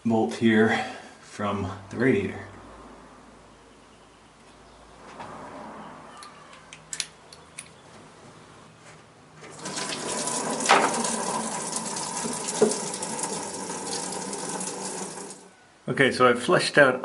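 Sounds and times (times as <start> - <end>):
coolant pouring into a bin: 9.5 - 15.5.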